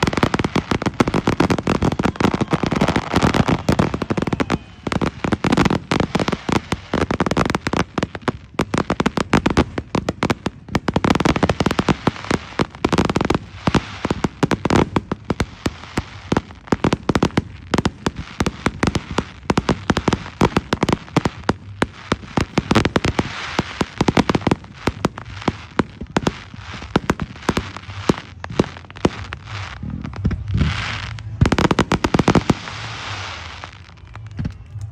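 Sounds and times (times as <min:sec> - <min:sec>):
fireworks bursts and bangs: 0:00.0 - 0:34.9
fireworks crackling hiss: 0:00.0 - 0:34.9.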